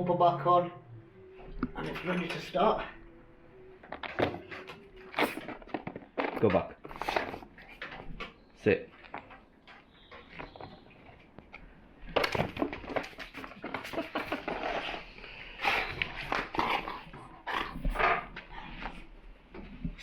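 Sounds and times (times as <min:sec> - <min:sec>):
clicks and rustles: 0:01.4 - 0:20.0.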